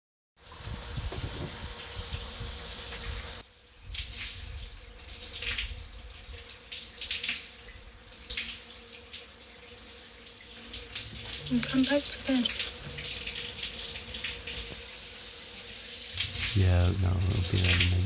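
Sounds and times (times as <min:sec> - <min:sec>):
water running from tap: 0:00.4 - 0:18.0
water splashing in sink: 0:10.4 - 0:14.9, 0:16.2 - 0:18.0.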